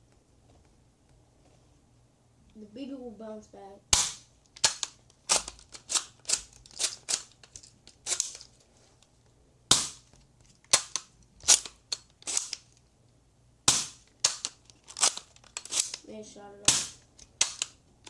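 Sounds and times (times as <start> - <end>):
bb gun pops: 3.9 - 5.6, 9.7 - 10.1, 13.6 - 15.2, 16.7 - 17.7.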